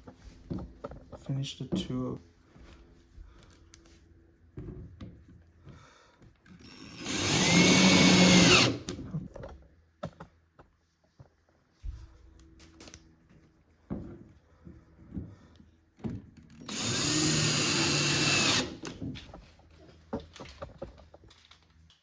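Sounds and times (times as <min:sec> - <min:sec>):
power drill driving a screw: 0:06.6 - 0:09.0, 0:16.6 - 0:19.0.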